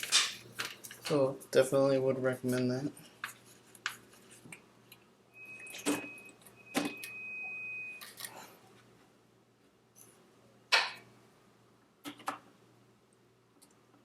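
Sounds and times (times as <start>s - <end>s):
thin steady high tone: 5.3s - 8.5s.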